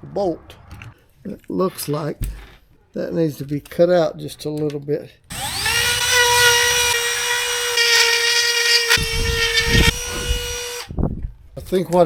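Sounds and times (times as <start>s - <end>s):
drill bit knocking and grinding wood: 5.3s - 10.9s
power drill running: 5.3s - 10.9s.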